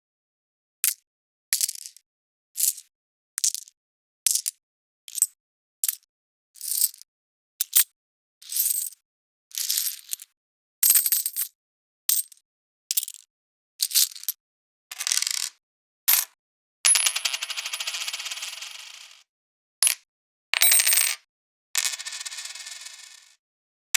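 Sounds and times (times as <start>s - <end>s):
coins dropping and clinking: 9.5s - 10.3s, 10.9s - 11.5s, 20.6s - 21.2s.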